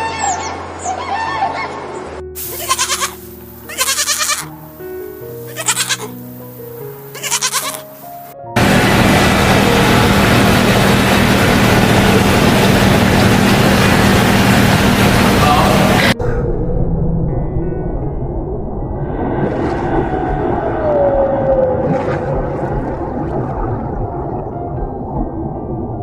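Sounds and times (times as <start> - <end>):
simple melody background music: 2.0 - 8.6
wavering bleats: 2.5 - 4.5, 5.4 - 6.2, 7.1 - 7.9
loud steady noise with low hum: 8.6 - 16.4.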